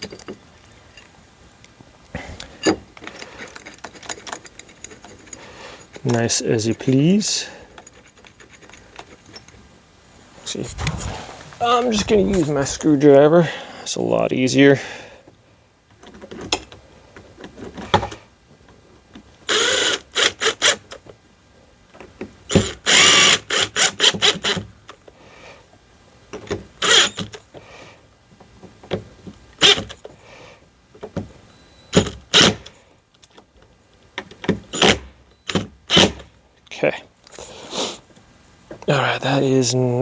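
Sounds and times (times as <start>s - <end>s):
power screwdriver driving screws: 19.5s - 20.8s, 22.5s - 24.6s, 26.8s - 27.3s, 29.6s - 29.9s.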